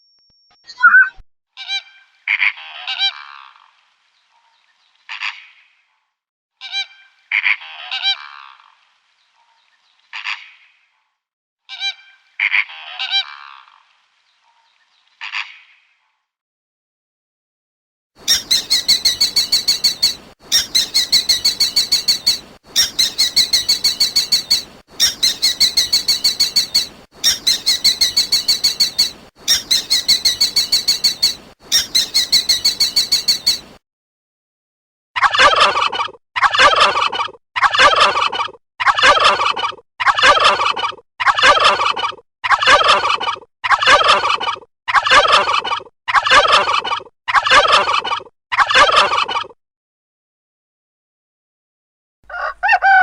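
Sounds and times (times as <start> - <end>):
turkey gobbling: 52.3 - 53.0.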